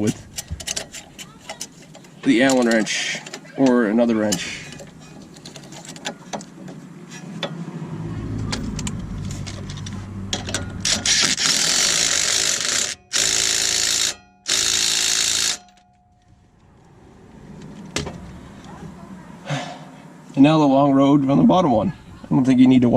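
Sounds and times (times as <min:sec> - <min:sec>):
impact wrench running: 0:10.4 - 0:15.8.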